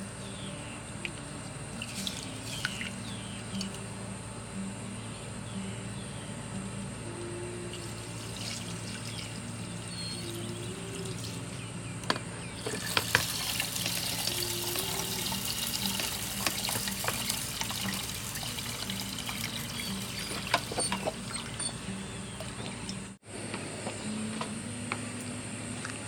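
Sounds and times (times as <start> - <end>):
water trickling and dripping: 1.8 - 3.8, 7.8 - 9.6, 12.7 - 21.7.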